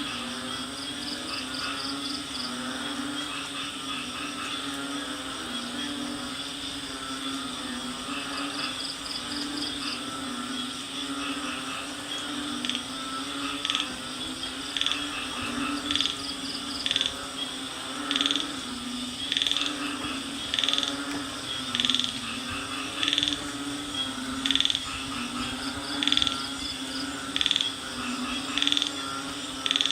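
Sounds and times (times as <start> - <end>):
frog chorus: 0.0 - 29.9
high insect whine: 0.0 - 29.9.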